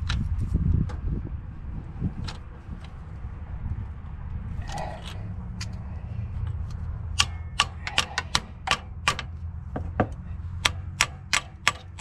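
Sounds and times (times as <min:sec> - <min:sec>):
low steady hum: 0:00.0 - 0:12.0
ratchet wrench clicking: 0:07.2 - 0:09.3.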